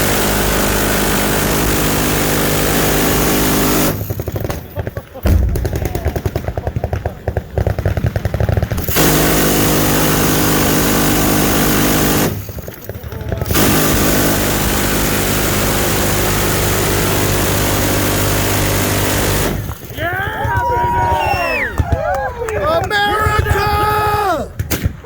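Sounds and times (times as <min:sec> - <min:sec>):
machine-gun fire: 0:00.0 - 0:19.9.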